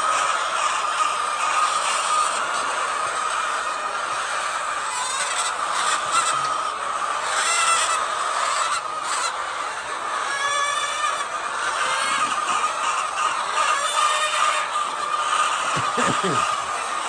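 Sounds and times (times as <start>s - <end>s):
drawn-out hen calls: 10.6s - 16.8s
hens calling: 12.2s - 17.0s.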